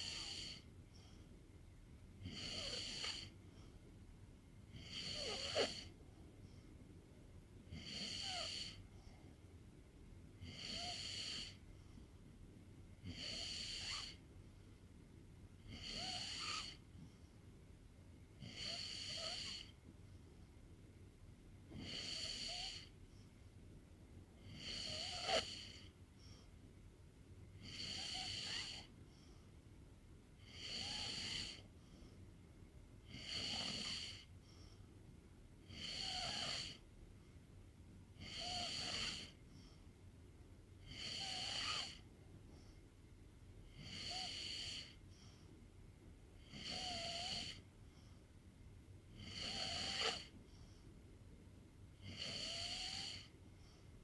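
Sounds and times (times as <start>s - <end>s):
pet snoring with whistle: 0.0s - 0.6s, 2.2s - 3.3s, 4.7s - 5.9s, 7.7s - 8.8s, 10.4s - 11.6s, 13.0s - 14.2s, 15.6s - 16.8s, 18.4s - 19.7s, 21.7s - 22.9s, 24.4s - 25.9s, 27.6s - 28.9s, 30.4s - 31.6s, 33.1s - 34.3s, 35.6s - 36.8s, 38.2s - 39.4s, 40.8s - 42.0s, 43.7s - 45.0s, 46.4s - 47.6s, 49.2s - 50.3s, 52.0s - 53.3s.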